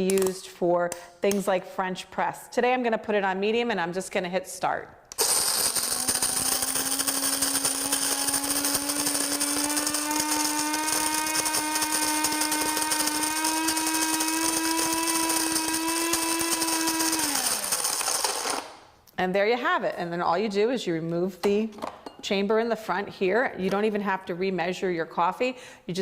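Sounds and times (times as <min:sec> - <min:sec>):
coffee grinder grinding beans: 0:05.1 - 0:18.9.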